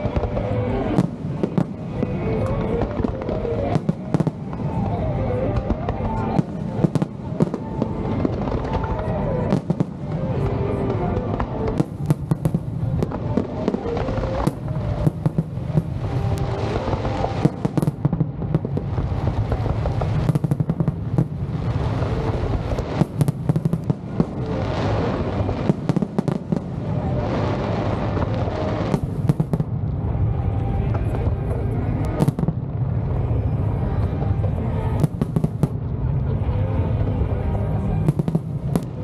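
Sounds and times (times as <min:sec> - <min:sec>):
music playing: 0:00.0 - 0:28.4
fireworks bangs and crackles: 0:00.0 - 0:39.0
low rumble: 0:12.4 - 0:39.0.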